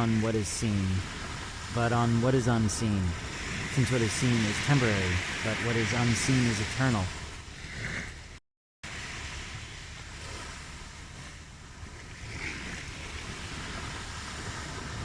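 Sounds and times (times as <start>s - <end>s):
ocean waves washing on shore: 0.0s - 15.0s.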